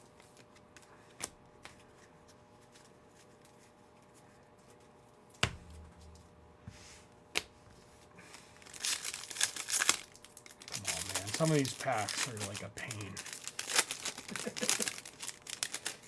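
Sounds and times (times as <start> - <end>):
faint steady hum: 0.0 - 16.0
cards handled on a table: 0.1 - 8.6.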